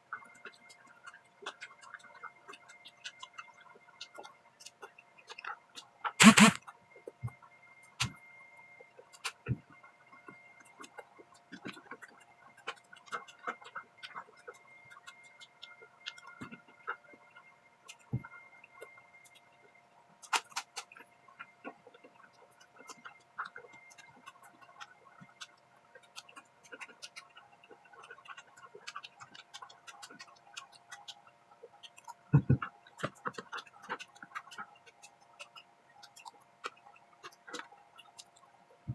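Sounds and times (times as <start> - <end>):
faint steady hum: 0.0 - 38.9
soft chewing: 0.0 - 38.9
sharp click: 6.2 - 6.6.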